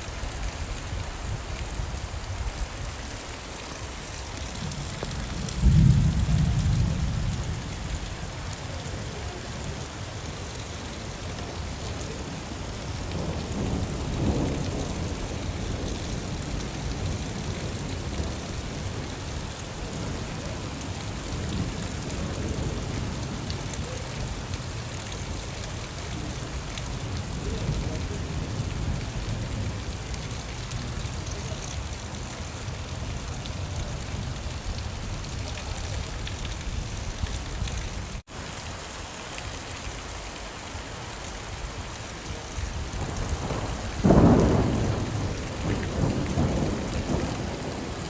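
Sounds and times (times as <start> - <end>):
steady rain: 0.0 - 48.0
thunder rumbling: 4.3 - 8.0, 42.3 - 48.0.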